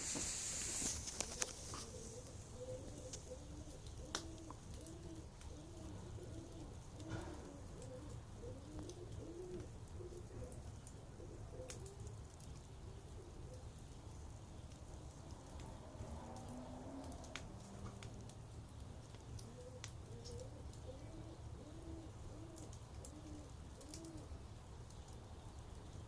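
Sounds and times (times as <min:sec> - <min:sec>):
campfire crackling and popping: 0:00.0 - 0:26.0
dove cooing: 0:01.1 - 0:13.8, 0:19.2 - 0:24.4.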